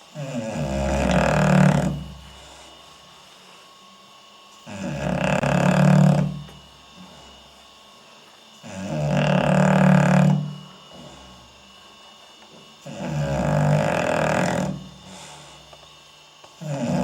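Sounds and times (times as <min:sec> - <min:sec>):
dog snoring: 0:00.0 - 0:03.1, 0:04.6 - 0:07.6, 0:08.6 - 0:11.7, 0:12.8 - 0:15.8, 0:16.6 - 0:17.0.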